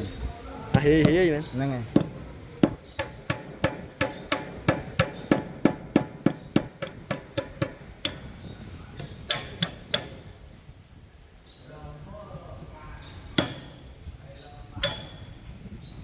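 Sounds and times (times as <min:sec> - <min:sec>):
hammer blows: 0:00.7 - 0:10.6, 0:13.2 - 0:14.1.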